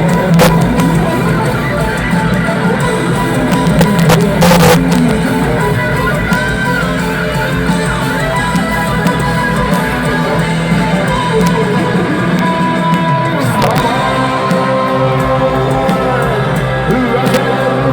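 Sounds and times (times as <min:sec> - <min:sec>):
burst of noise: 0:00.0 - 0:16.3
bass guitar: 0:00.0 - 0:17.9
electric guitar: 0:00.0 - 0:17.9
rock band playing: 0:00.0 - 0:17.9.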